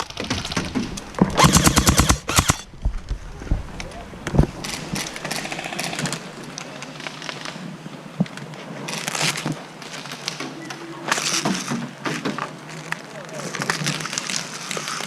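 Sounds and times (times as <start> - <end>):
airsoft guns firing bursts: 1.4 - 2.7.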